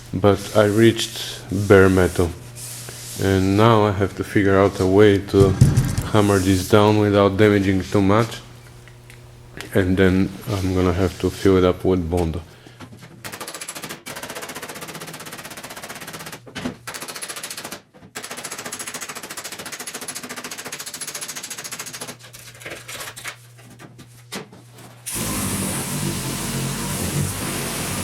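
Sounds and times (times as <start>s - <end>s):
rapid hammering on sheet metal: 5.4s - 6.8s, 13.3s - 22.2s
steady noise: 5.4s - 7.0s.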